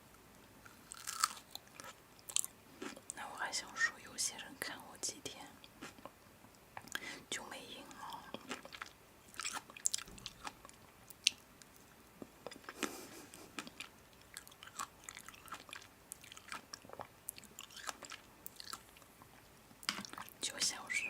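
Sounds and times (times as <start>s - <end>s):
person chewing crunchy food: 0.6s - 3.2s, 5.6s - 6.2s, 7.9s - 20.4s.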